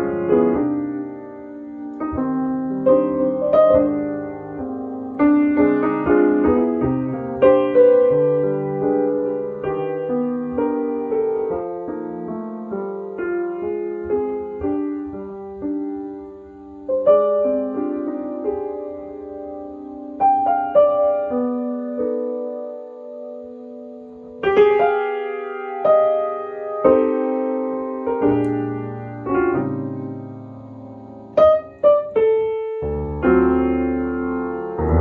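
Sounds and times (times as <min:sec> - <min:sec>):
solo piano ballad: 0:00.0 - 0:35.0.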